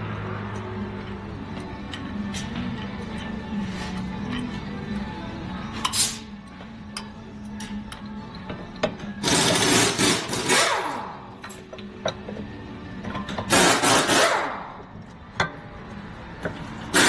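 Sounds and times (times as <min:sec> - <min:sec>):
impact wrench bursts: 0:09.2 - 0:11.2, 0:13.5 - 0:14.7.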